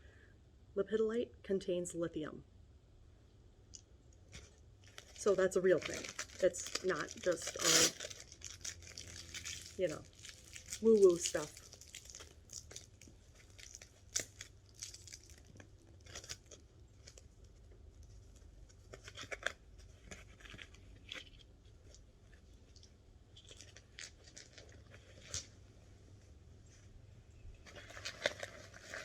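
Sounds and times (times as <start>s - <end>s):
packing material rustling: 4.3s - 17.4s, 18.0s - 25.6s, 27.6s - 29.0s.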